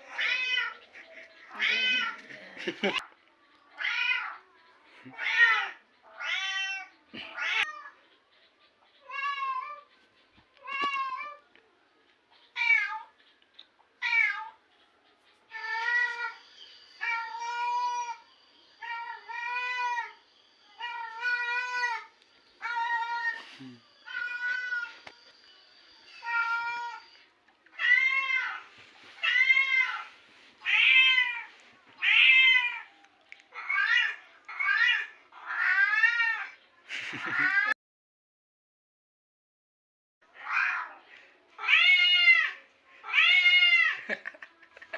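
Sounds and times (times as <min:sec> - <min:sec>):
kittens meowing: 0:01.5 - 0:02.3.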